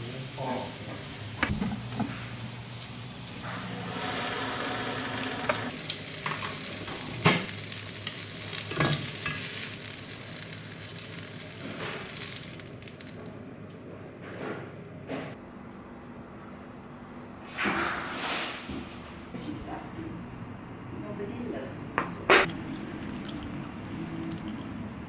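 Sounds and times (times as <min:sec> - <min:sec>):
food sizzling in a pan: 0:00.0 - 0:13.3.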